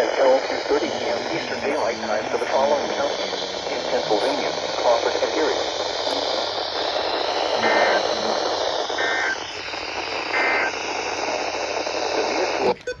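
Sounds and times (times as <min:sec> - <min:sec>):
radio hiss: 0:00.0 - 0:13.0
two-tone digital bursts: 0:06.1 - 0:11.0.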